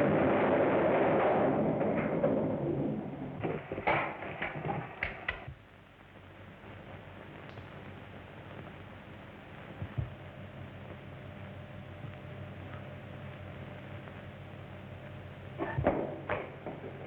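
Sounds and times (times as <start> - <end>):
explosion rumble in tunnel: 0.0 - 4.8
old film soundtrack hiss: 0.0 - 17.0.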